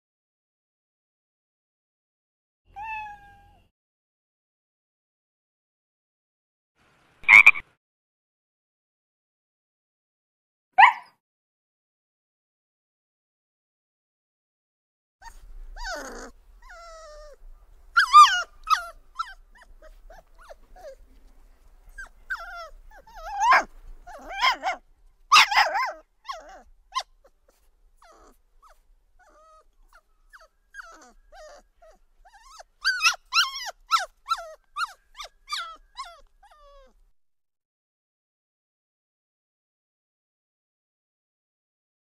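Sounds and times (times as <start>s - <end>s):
dog calls: 10.8s - 11.2s, 18.0s - 21.0s, 22.0s - 27.1s.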